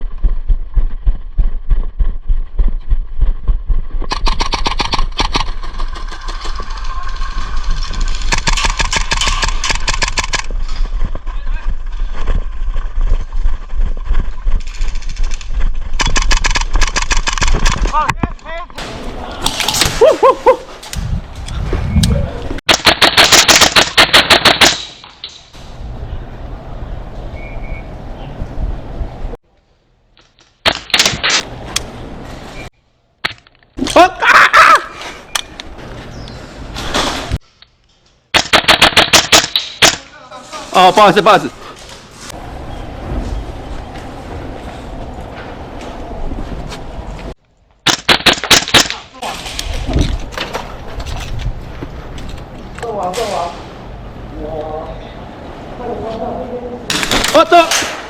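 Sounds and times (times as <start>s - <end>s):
low rumble: 0.0s - 4.3s
airsoft gunfire bursts: 22.7s - 24.8s, 38.4s - 40.0s.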